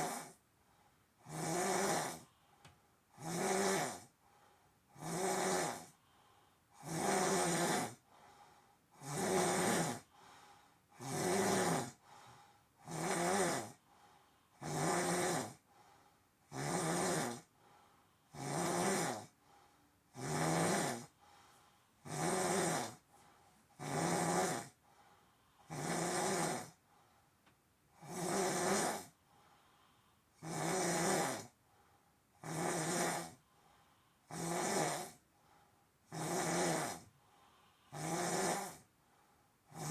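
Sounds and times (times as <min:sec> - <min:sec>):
person snoring: 0:00.0 - 0:00.4, 0:01.2 - 0:02.3, 0:03.1 - 0:04.1, 0:05.0 - 0:06.0, 0:06.8 - 0:08.1, 0:08.9 - 0:10.3, 0:10.9 - 0:13.8, 0:14.6 - 0:15.6, 0:16.5 - 0:17.5, 0:18.3 - 0:19.4, 0:20.1 - 0:21.2, 0:22.0 - 0:23.0, 0:23.8 - 0:24.8, 0:25.7 - 0:26.8, 0:28.0 - 0:29.2, 0:30.4 - 0:31.6, 0:32.4 - 0:33.4, 0:34.3 - 0:35.2, 0:36.1 - 0:37.1, 0:37.9 - 0:38.9, 0:39.7 - 0:39.9
quiet breaths: 0:00.0 - 0:39.9.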